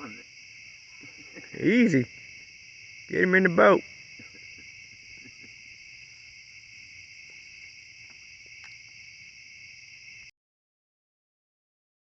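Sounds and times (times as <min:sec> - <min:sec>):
night insects chorus: 0:00.0 - 0:10.3
faint ticks: 0:07.2 - 0:09.0.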